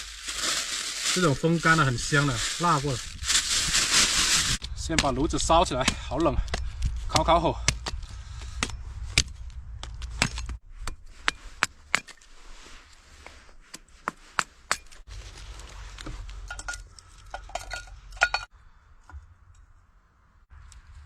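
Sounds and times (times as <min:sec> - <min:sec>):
wood and metal clicks and clinks: 0:14.4 - 0:19.7.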